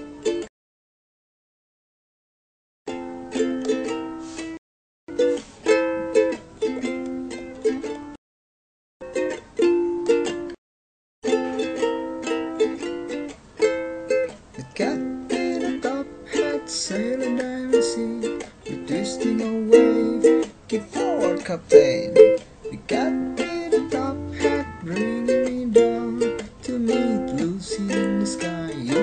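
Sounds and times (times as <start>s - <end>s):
plucked and strummed strings: 0.0s - 0.5s, 2.9s - 4.5s, 5.1s - 8.2s, 9.0s - 10.6s, 11.2s - 29.0s
sliding melody notes: 17.9s - 29.0s.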